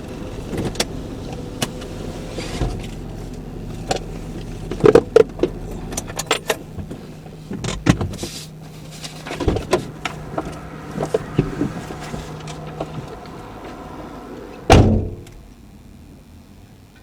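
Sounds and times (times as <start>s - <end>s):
low steady hum: 0.0s - 17.0s
loud thud: 14.7s - 15.3s.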